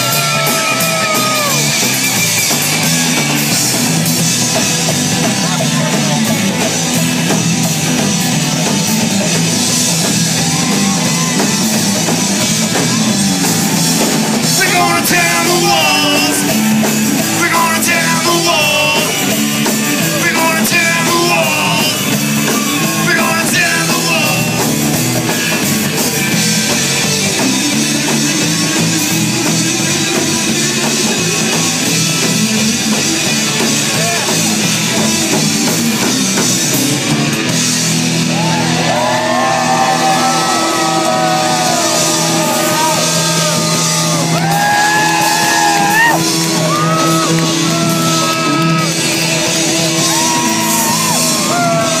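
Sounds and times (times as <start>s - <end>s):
punk rock band playing: 0.0s - 52.0s.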